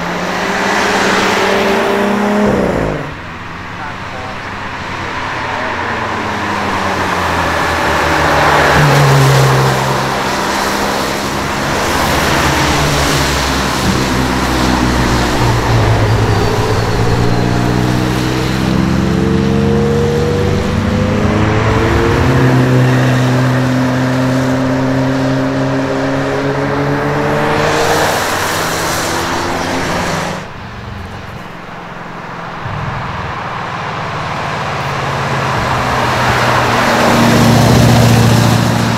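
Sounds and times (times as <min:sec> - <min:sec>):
car engine accelerating hard: 0:00.0 - 0:38.9.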